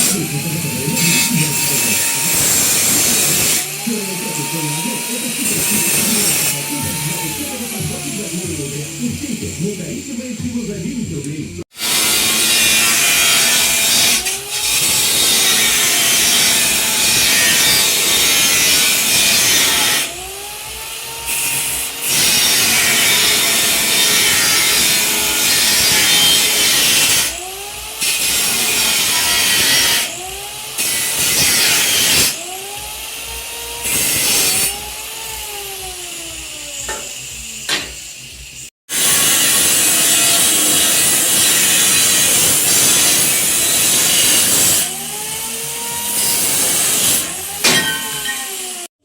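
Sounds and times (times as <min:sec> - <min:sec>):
laser cutter gas hiss: 0:00.0 - 0:48.9
servo motors whining: 0:00.0 - 0:48.9.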